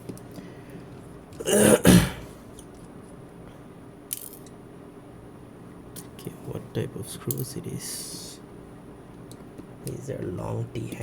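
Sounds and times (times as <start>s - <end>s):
man clearing his throat: 1.4s - 2.4s.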